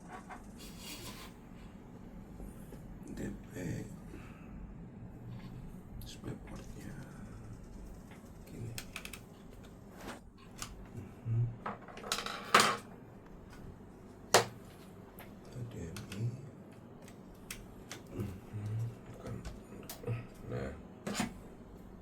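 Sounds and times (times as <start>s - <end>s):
computer hardware clicks and clatter: 5.3s - 11.0s, 11.6s - 13.7s, 14.3s - 22.0s.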